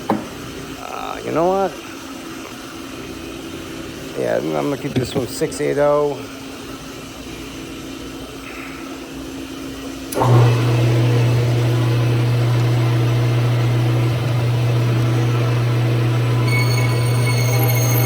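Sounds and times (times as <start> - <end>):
lathe motor humming: 10.1 - 18.0
faint high whine: 15.5 - 18.0.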